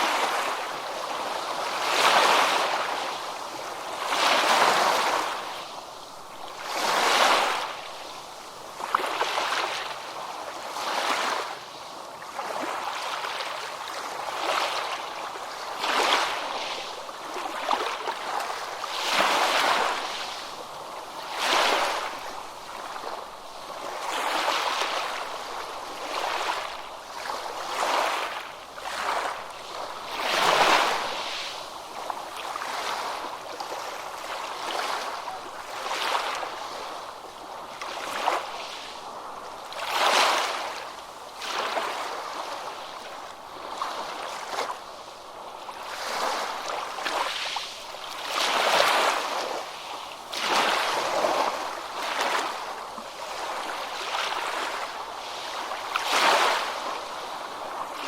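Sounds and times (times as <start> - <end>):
ocean waves breaking on a beach: 0.0 - 58.0.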